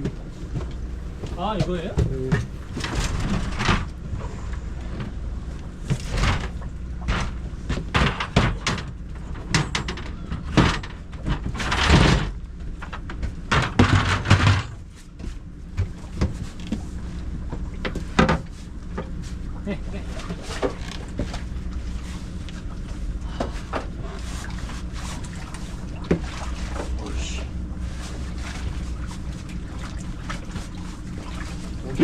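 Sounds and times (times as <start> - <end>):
low rumble: 0.0 - 8.0, 16.8 - 32.0.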